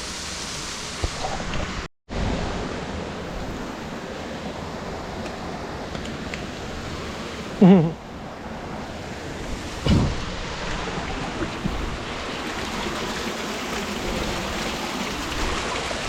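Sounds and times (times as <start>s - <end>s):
waterfall splashing over rocks: 0.0s - 1.8s, 10.1s - 16.0s
short low thump: 9.8s - 10.4s.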